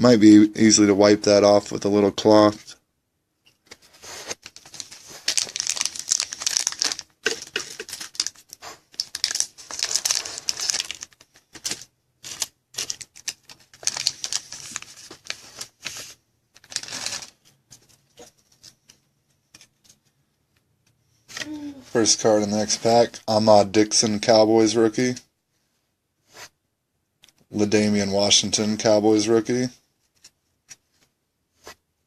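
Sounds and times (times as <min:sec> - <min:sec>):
foil wrapper crinkling and tearing: 0:04.4 - 0:16.0, 0:16.6 - 0:17.4.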